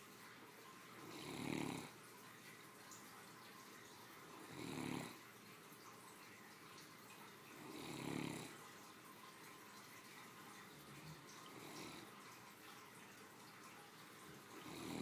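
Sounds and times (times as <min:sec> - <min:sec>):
dog snoring: 0:01.0 - 0:02.0, 0:04.4 - 0:05.2, 0:07.6 - 0:08.6, 0:11.5 - 0:12.1, 0:14.6 - 0:15.0.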